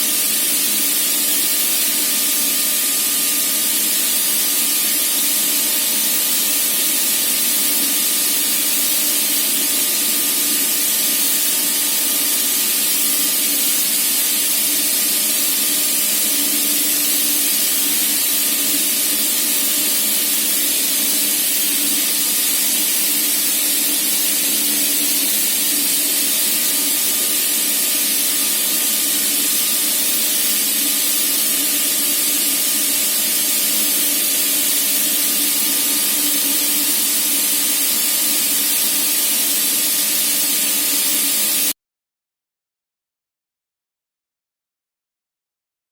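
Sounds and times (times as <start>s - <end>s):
compressor machine hum: 0.0s - 41.5s
compressed air hissing: 7.7s - 41.3s.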